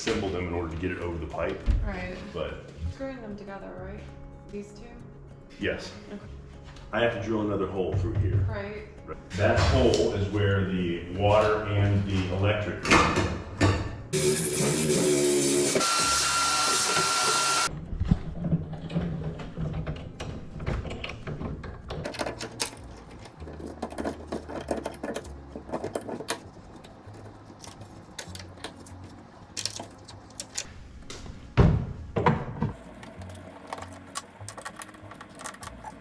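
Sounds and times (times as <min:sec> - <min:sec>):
power drill running: 0:14.2 - 0:17.7
clicks and knocks: 0:18.5 - 0:30.7.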